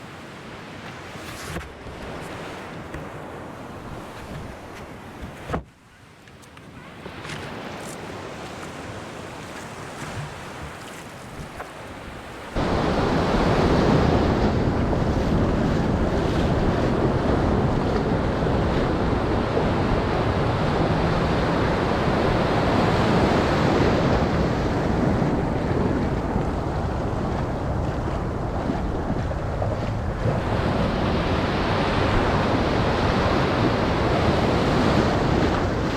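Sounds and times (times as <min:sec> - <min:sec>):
ocean surf rushing: 0:00.0 - 0:35.9
wind buffeting microphone: 0:01.2 - 0:35.9.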